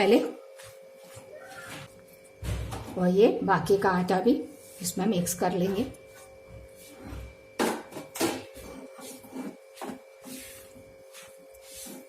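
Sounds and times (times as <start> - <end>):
utensil scraping mixture in pan: 8.4 - 12.0.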